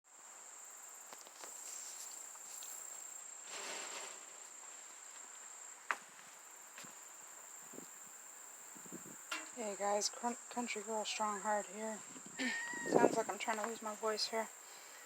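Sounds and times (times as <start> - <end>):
insects trilling: 0.3 - 15.0
rustling: 1.1 - 5.4.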